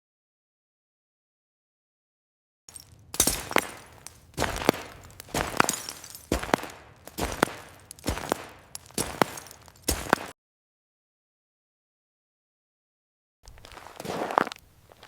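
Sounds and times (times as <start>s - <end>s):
footsteps on gravel: 2.7s - 10.3s, 13.5s - 15.0s.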